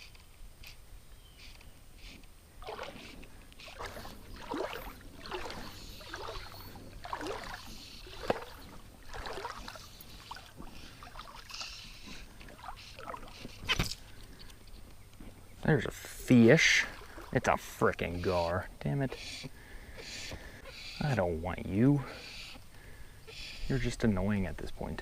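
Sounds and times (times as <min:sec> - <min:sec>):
water swishing and splashing: 0:02.5 - 0:14.3, 0:15.7 - 0:18.6.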